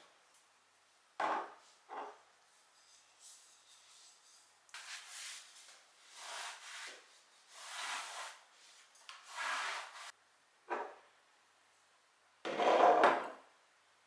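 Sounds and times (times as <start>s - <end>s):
hand scrubbing a surface: 2.6s - 10.1s.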